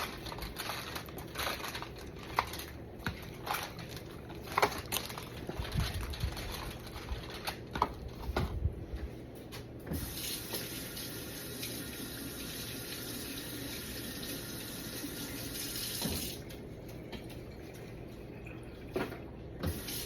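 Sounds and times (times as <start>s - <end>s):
tap water running: 9.9s - 20.0s.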